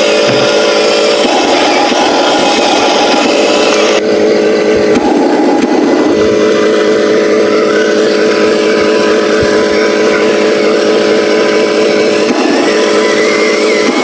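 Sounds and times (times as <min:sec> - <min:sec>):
faint high whine: 0:00.0 - 0:14.0
simulated diesel truck engine: 0:00.0 - 0:14.0.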